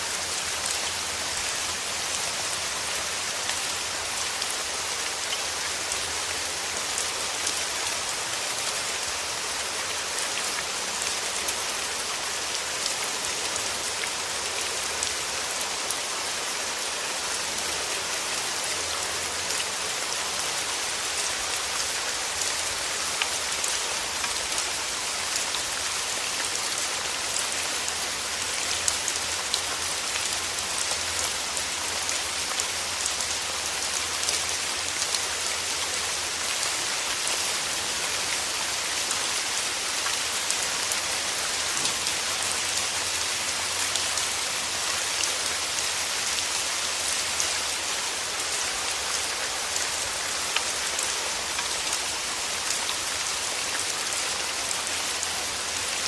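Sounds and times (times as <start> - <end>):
steady rain falling: 0.0 - 56.0
raindrops ticking on a surface: 40.0 - 42.9.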